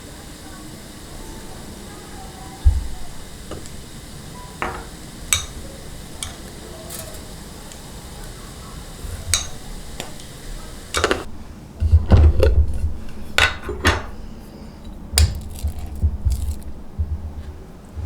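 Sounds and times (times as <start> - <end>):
utensils and cookware clinking: 0.0 - 17.6.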